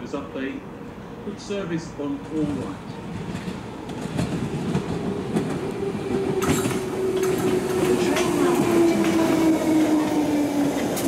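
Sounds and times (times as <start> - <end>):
train rumble: 0.0 - 11.0
wheels clicking over rail joints: 2.3 - 11.0.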